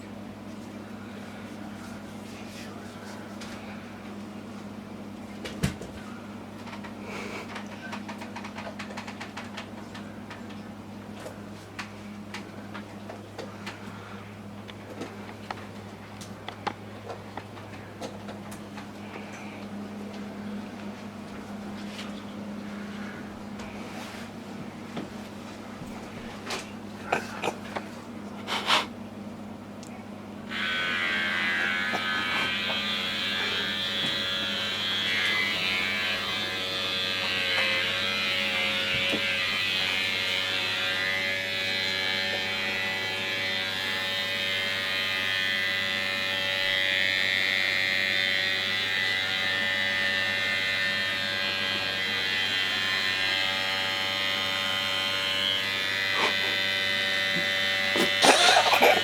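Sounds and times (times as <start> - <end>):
electric hair clippers buzzing: 30.5 - 59.0.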